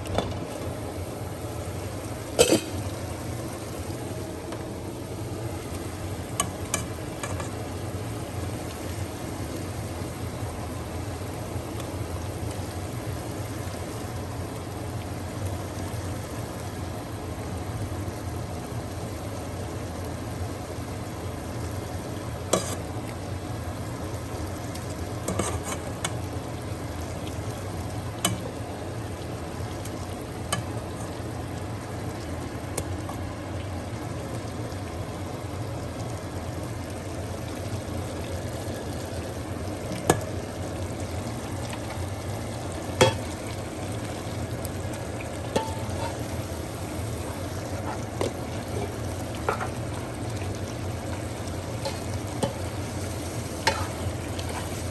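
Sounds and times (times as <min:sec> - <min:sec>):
soup sizzling in a pot: 0:00.4 - 0:54.9.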